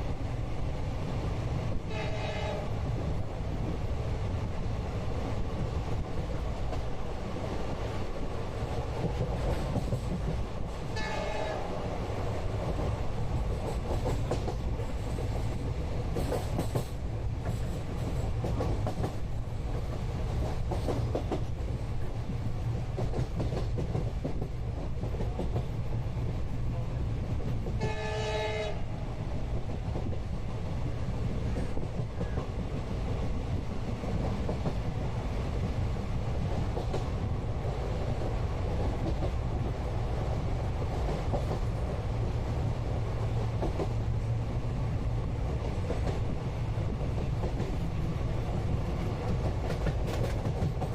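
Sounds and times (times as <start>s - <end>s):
train rumble: 0.0s - 50.9s
train horn: 1.8s - 2.8s, 10.9s - 11.9s, 27.8s - 29.1s
wheels clicking over rail joints: 48.7s - 50.9s.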